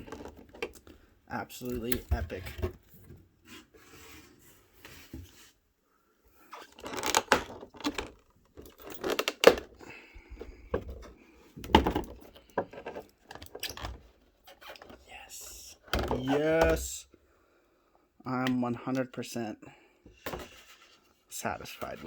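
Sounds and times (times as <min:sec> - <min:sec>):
rustling and scraping packaging: 0:01.6 - 0:05.6, 0:06.4 - 0:16.8, 0:20.2 - 0:22.0.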